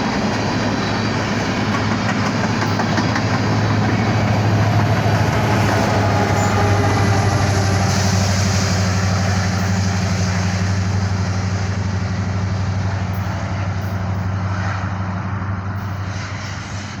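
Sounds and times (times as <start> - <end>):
locomotive engine drone: 0.0 - 17.0.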